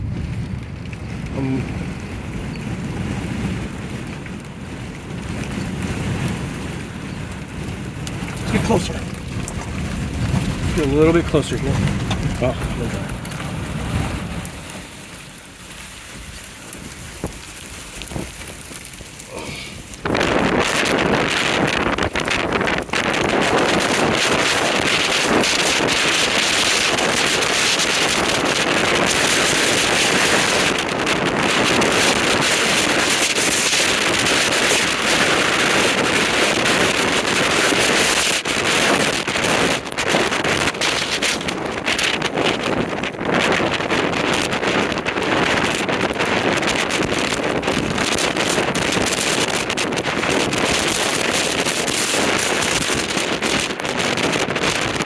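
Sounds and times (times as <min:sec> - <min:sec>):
low rumble: 0:00.0 - 0:25.2
wind rushing around vehicle: 0:00.0 - 0:55.0.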